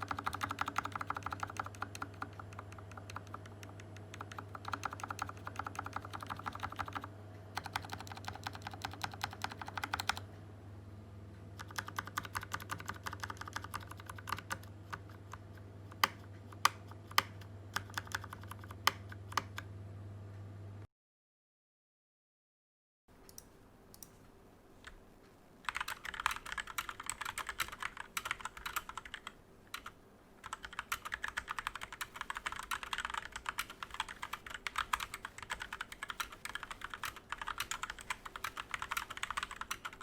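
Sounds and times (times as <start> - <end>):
mechanical keyboard typing: 0.0 - 10.3, 11.6 - 19.7, 25.6 - 40.0
low steady hum: 0.0 - 20.9.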